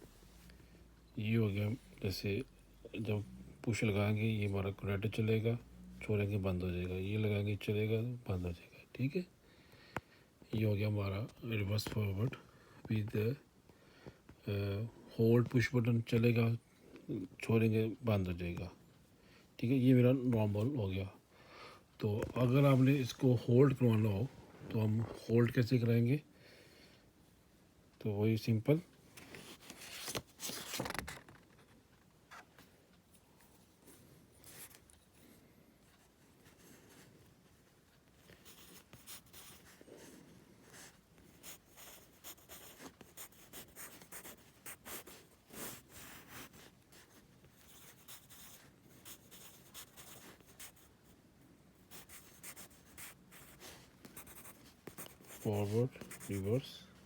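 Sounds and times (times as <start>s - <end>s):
pen scratching on paper: 38.3s - 50.9s, 51.9s - 56.7s.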